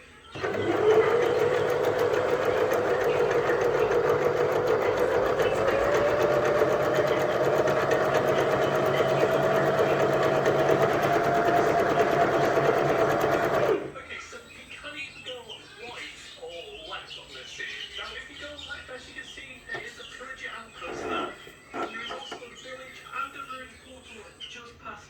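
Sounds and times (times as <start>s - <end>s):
sewing machine running: 0.3s - 14.0s.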